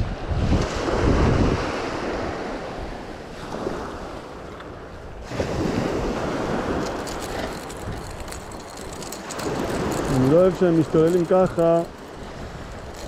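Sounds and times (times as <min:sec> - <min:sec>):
wind gusting on microphone: 0:00.0 - 0:13.0
surf breaking on shore: 0:05.2 - 0:13.0.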